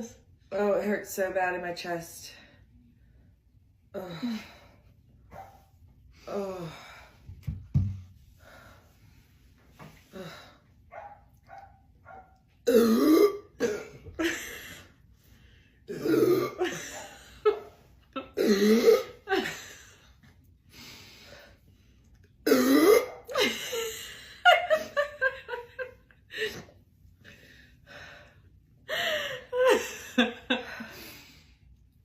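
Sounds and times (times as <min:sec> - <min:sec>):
woman burping loudly: 0:12.7 - 0:14.0, 0:15.9 - 0:17.0, 0:18.4 - 0:19.4, 0:22.4 - 0:23.4.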